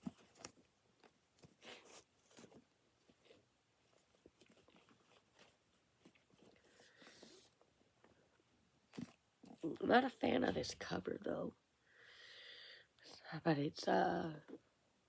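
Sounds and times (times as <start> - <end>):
box contents rustling: 0.0 - 7.8.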